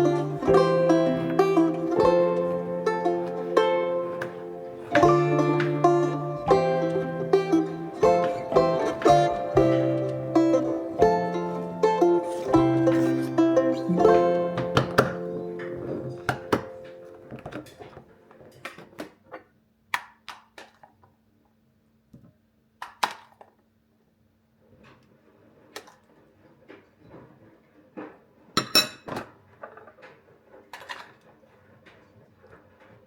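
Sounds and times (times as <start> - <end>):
dishes and cutlery clinking: 0.0 - 18.8, 28.6 - 29.9.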